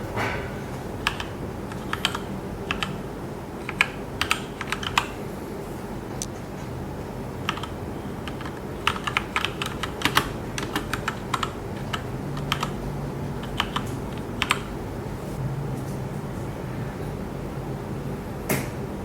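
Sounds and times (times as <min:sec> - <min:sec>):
mechanical keyboard typing: 0:01.0 - 0:03.0, 0:03.6 - 0:05.1, 0:07.4 - 0:12.8, 0:13.4 - 0:14.7.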